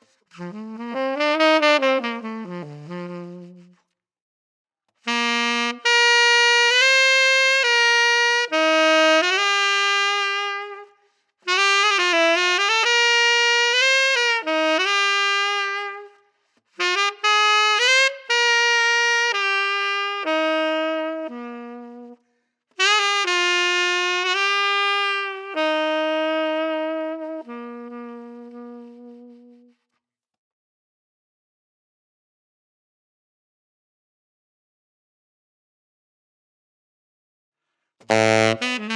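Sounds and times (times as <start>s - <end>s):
saxophone jazz solo: 0.1s - 3.8s, 5.0s - 22.2s, 22.8s - 29.9s, 38.0s - 38.9s.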